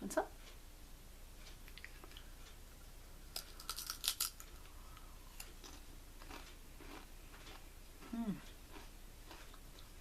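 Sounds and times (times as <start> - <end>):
potato chips crunching: 3.3 - 4.6, 5.4 - 9.9.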